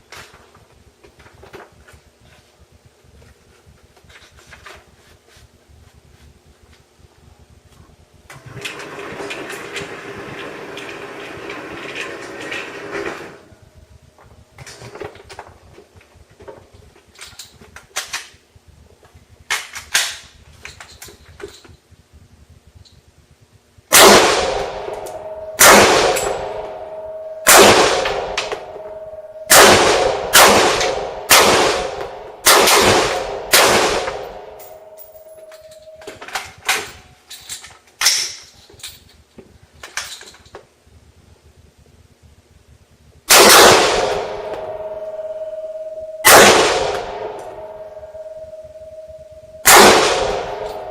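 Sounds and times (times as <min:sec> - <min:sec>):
steady whirring noise: 0:00.0 - 0:50.9
rifle shots with ringing echo: 0:23.9 - 0:36.0, 0:43.3 - 0:50.9.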